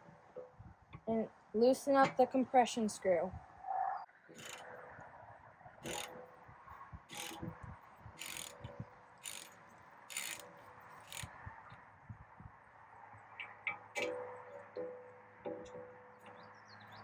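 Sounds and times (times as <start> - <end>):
hand ratchet clicking: 4.4 - 4.7, 5.8 - 6.2, 7.1 - 7.4, 8.2 - 11.3.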